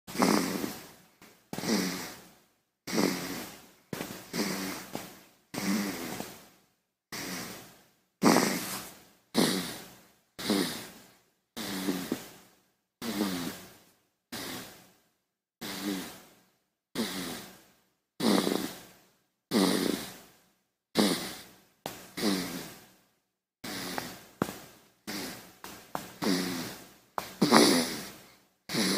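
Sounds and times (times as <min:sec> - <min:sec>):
baby snoring: 0:00.1 - 0:01.0, 0:01.6 - 0:02.3, 0:02.9 - 0:06.4, 0:07.1 - 0:12.4, 0:13.0 - 0:13.7, 0:14.3 - 0:14.8, 0:15.6 - 0:16.3, 0:17.0 - 0:17.6, 0:18.2 - 0:18.9, 0:19.5 - 0:20.2, 0:21.0 - 0:21.5, 0:22.1 - 0:22.8, 0:23.6 - 0:28.9.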